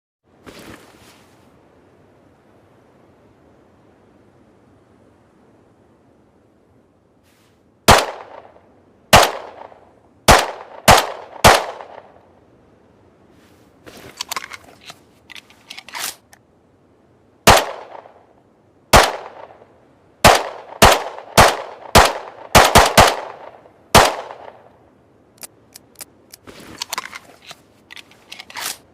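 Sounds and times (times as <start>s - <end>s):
pistol shots: 7.9s - 8.5s, 9.1s - 12.1s, 17.5s - 18.2s, 18.9s - 19.6s, 20.2s - 24.6s
metallic clicks: 25.4s - 28.9s.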